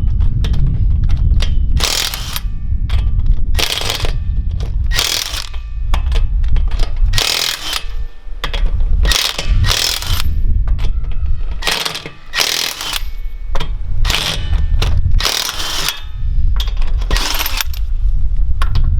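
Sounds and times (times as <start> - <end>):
impact wrench hammering: 1.8 - 2.5, 3.6 - 6.1, 7.2 - 10.4, 11.6 - 16.2, 17.0 - 17.9.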